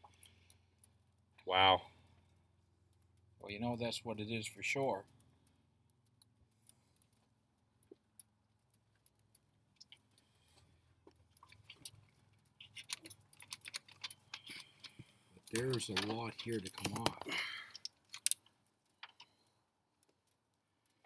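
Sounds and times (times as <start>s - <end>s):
small jingling rattles: 11.2s - 19.6s.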